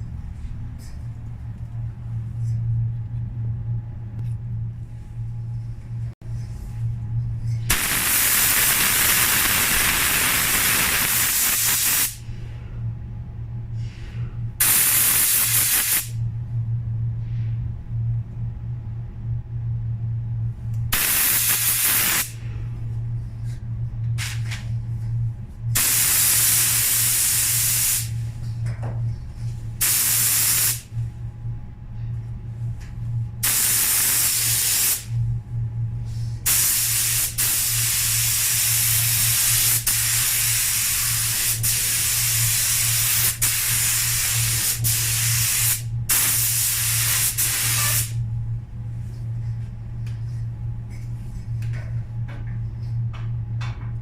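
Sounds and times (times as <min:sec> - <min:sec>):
steady low hum: 0:00.0 - 0:54.0
paint spray gun hissing: 0:07.7 - 0:12.2, 0:14.6 - 0:16.1, 0:21.0 - 0:22.3, 0:36.5 - 0:48.1.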